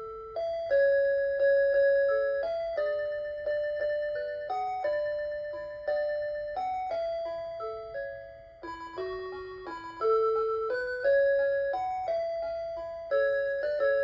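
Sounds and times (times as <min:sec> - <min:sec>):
alarm clock chime melody: 0:00.0 - 0:14.0.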